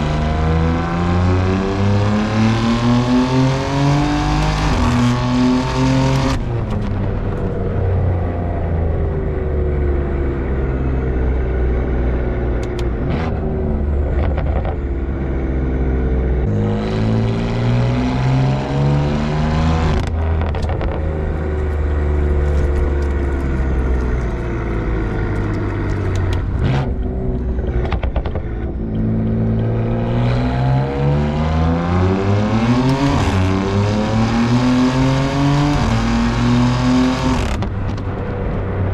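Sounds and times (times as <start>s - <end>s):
car engine exhaust: 0.0s - 38.9s
exhaust cracks: 12.5s - 15.2s, 19.8s - 30.3s, 37.2s - 38.9s.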